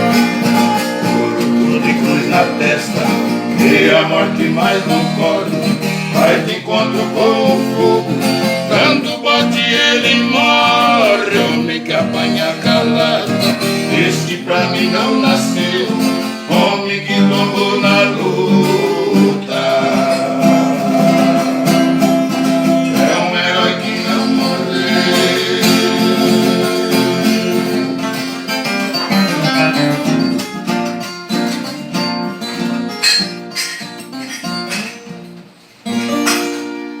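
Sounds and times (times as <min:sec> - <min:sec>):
plucked viola and guitar music: 0:00.0 - 0:37.0.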